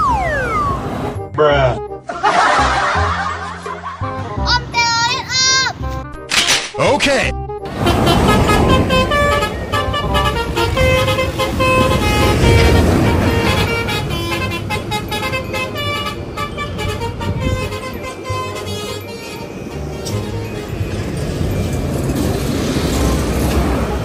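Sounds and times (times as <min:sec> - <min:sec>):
vehicle engine noise: 0:00.0 - 0:01.3, 0:07.6 - 0:24.0
bus horn playing a tune: 0:07.7 - 0:21.2, 0:23.2 - 0:24.0.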